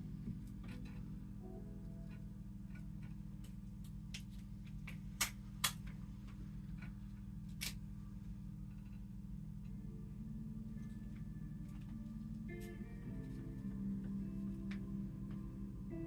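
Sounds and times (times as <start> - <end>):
low background music: 0.0 - 16.0.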